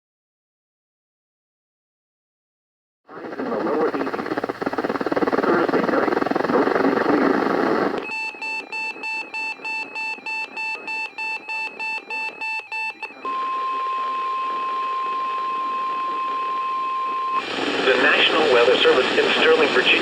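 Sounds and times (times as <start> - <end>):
loud radio hiss: 3.1 - 8.1, 17.4 - 20.0
steady alarm tone: 6.1 - 18.7
electronic alarm beeping: 8.0 - 17.4.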